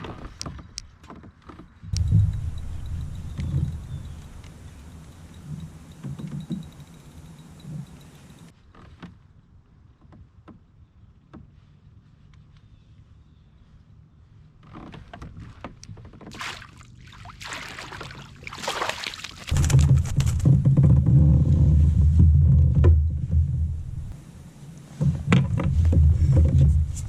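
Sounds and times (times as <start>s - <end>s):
loud low rumble: 1.9s - 5.8s, 19.5s - 24.6s
water splashing at hull: 1.9s - 8.5s, 15.4s - 20.6s.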